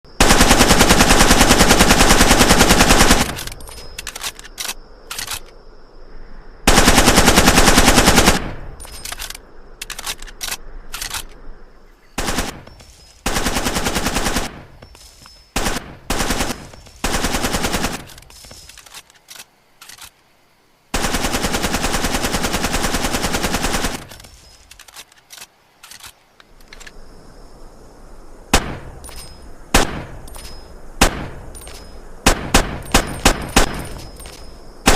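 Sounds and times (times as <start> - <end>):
submachine gun firing bursts: 0.2 - 3.5, 6.7 - 8.7, 12.2 - 12.6, 13.2 - 14.8, 15.6 - 18.2, 21.0 - 24.2, 32.2 - 34.1
single gunshots: 6.7 - 8.8, 28.5 - 29.0, 29.7 - 30.3, 31.0 - 31.5, 32.2 - 34.1.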